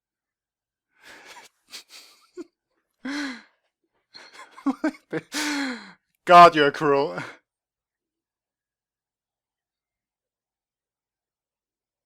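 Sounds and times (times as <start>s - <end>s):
person breathing and gasping: 1.0s - 2.3s, 3.0s - 3.5s, 5.2s - 6.0s
person sighing or groaning: 3.1s - 3.4s, 5.3s - 5.9s.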